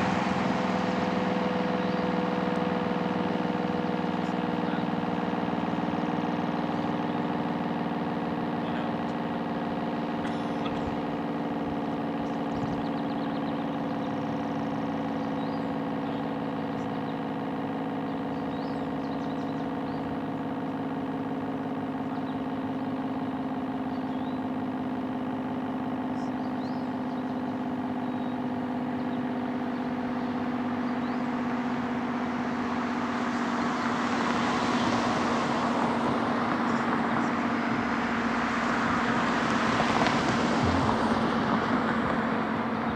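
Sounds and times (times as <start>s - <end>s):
warning siren steady tone: 0.0s - 7.8s, 26.2s - 42.9s
passing traffic rushing: 0.0s - 22.8s, 25.6s - 42.9s.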